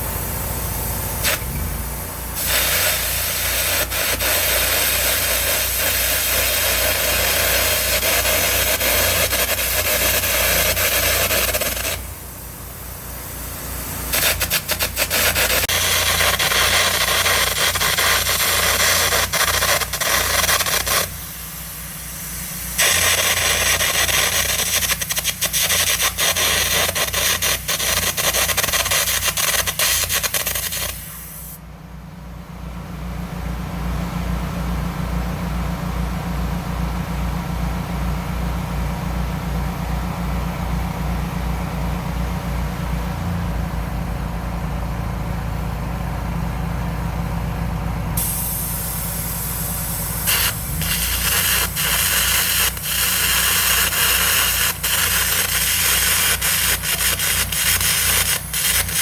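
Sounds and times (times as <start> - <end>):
engine running: 0.0 - 59.0
compressed air jet hissing: 1.1 - 31.6, 48.2 - 59.0
crackling arc: 1.2 - 12.1, 13.9 - 31.5, 48.2 - 59.0.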